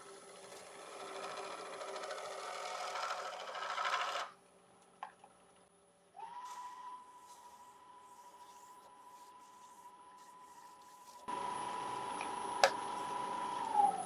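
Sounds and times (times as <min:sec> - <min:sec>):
wax rubbing on spinning wood: 0:06.4 - 0:13.8.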